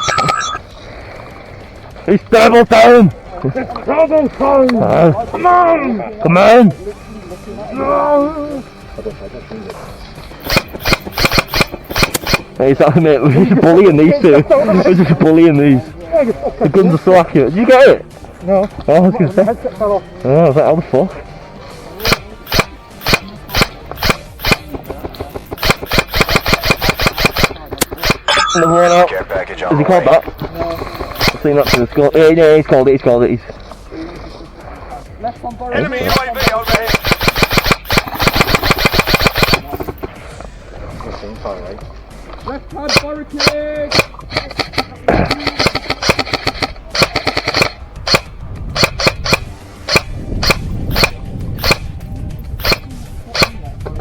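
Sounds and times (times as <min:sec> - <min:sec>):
airsoft gun shots: 0:10.4 - 0:12.6, 0:22.0 - 0:29.4, 0:30.0 - 0:32.3, 0:36.0 - 0:40.2, 0:42.9 - 0:52.0, 0:52.6 - 0:53.6.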